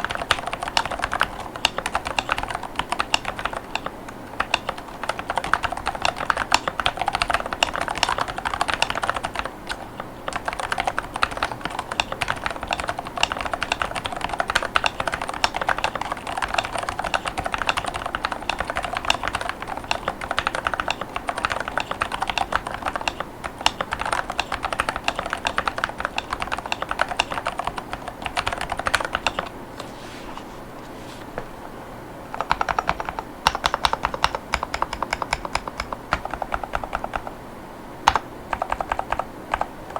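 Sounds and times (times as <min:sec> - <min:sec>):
fast typing on mechanical keyboard: 0:00.0 - 0:29.5, 0:32.4 - 0:37.3, 0:38.0 - 0:39.9.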